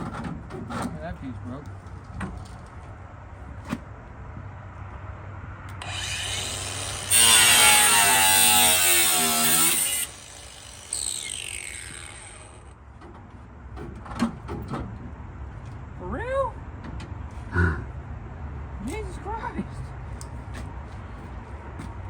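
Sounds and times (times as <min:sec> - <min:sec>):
power tool cutting: 0:05.7 - 0:12.7.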